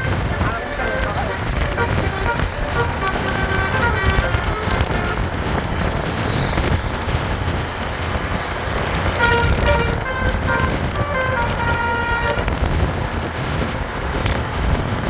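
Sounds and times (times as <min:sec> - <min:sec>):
bus horn playing melody: 0:00.0 - 0:06.2, 0:08.9 - 0:13.2
engine and road rumble: 0:00.0 - 0:15.0.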